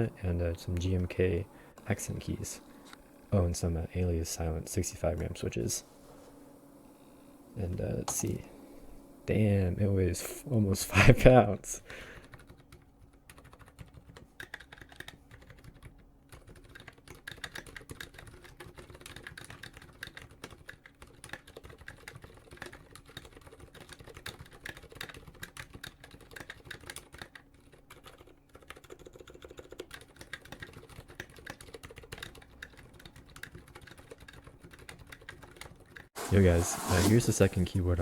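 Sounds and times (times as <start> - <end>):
fast typing on mechanical keyboard: 12.2 - 36.1.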